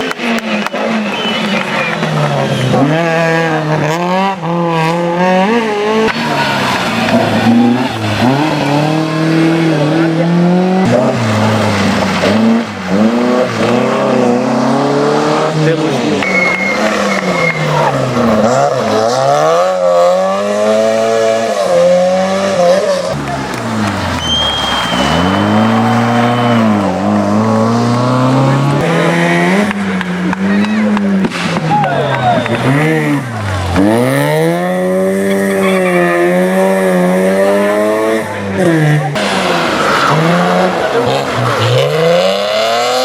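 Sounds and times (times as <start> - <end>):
rally car engine revving: 0.0 - 43.0
tyres squealing: 10.9 - 19.3, 22.6 - 29.2, 29.8 - 36.8
high thin whistle: 16.2 - 17.7, 24.2 - 25.6.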